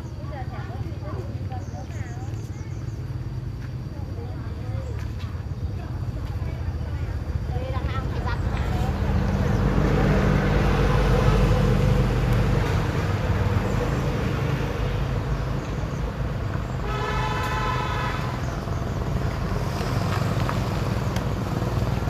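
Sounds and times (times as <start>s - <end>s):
vehicle engine running: 4.5s - 22.0s
horn honking: 16.7s - 18.7s.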